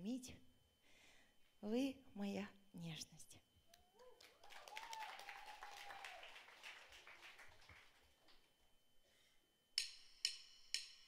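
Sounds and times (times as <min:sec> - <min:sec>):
audience applause: 0:04.2 - 0:08.4
drumstick count-in ticks: 0:09.8 - 0:11.0.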